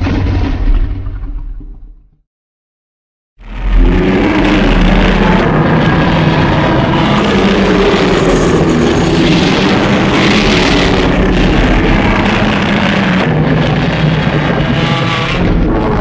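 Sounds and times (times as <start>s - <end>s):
harsh monster roar noise: 3.4s - 16.0s
low pitched drone: 3.4s - 16.0s.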